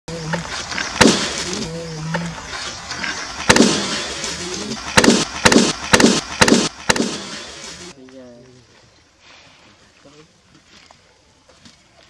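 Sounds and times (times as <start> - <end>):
balloons popping: 0.7 - 1.6, 3.4 - 4.0, 4.6 - 7.4.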